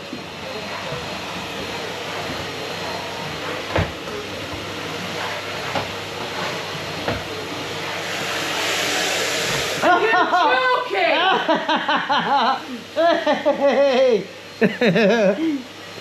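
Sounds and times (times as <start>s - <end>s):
vacuum cleaner running: 0.0s - 16.0s.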